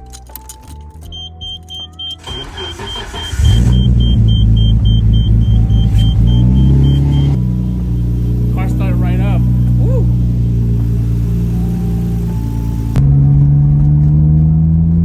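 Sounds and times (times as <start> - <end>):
car engine starter cranking: 0.0 - 9.3
car warning chime beeping: 1.1 - 9.4
car engine idling: 1.8 - 13.0.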